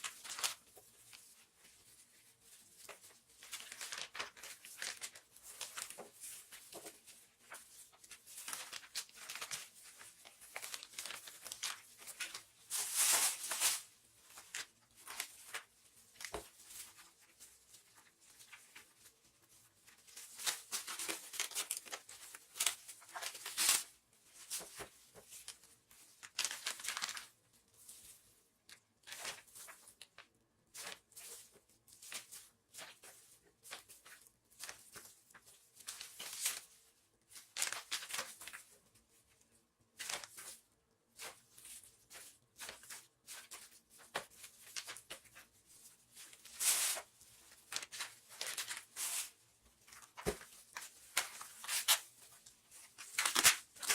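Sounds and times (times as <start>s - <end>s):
plastic packaging crinkling and tearing: 0.0s - 1.2s, 2.2s - 6.2s, 6.8s - 17.1s, 20.1s - 23.9s, 25.4s - 27.4s, 37.4s - 38.6s, 40.0s - 40.5s, 41.5s - 53.9s.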